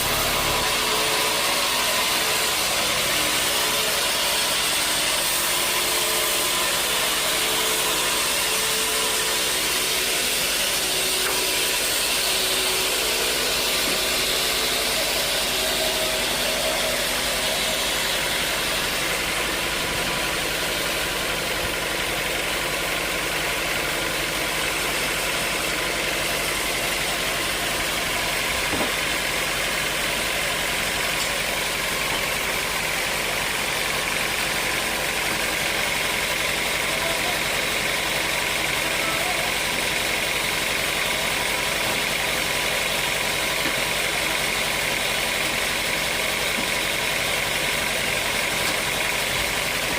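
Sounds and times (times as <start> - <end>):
sawmill machinery droning: 0.0 - 49.9
single short knock: 28.7 - 29.0.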